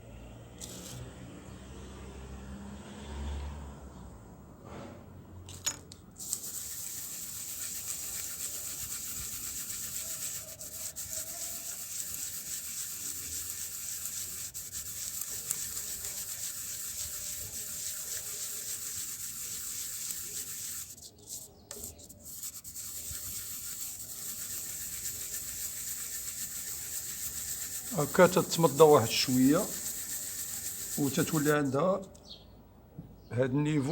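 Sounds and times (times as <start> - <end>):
blade rubbing on sharpening surface: 6.2 - 31.8.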